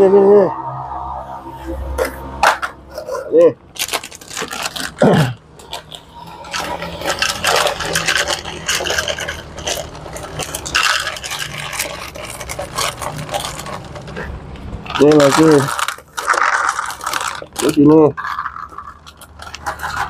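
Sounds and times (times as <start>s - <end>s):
cat food scraping in dish: 18.2s - 20.0s.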